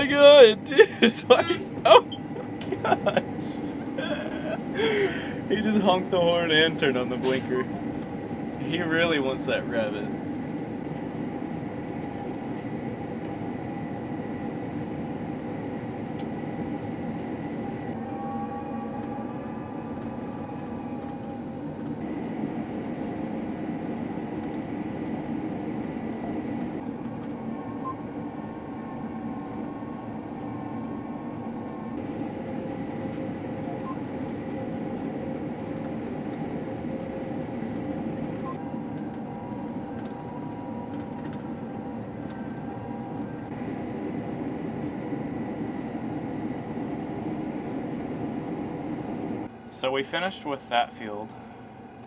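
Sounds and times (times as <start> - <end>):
thin high whine: 0.0 - 18.0, 32.0 - 38.6, 43.5 - 51.4
combine harvester drone: 0.0 - 51.5.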